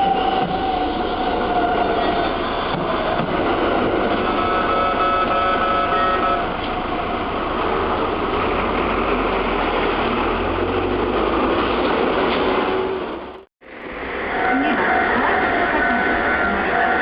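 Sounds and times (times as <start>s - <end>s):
electric train whine: 0.0s - 9.7s
low train rumble: 0.0s - 17.0s
wheels rushing on rail: 0.0s - 17.0s.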